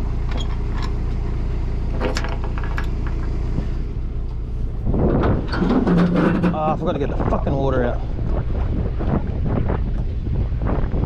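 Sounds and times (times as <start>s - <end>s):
vehicle engine humming: 0.0s - 11.0s.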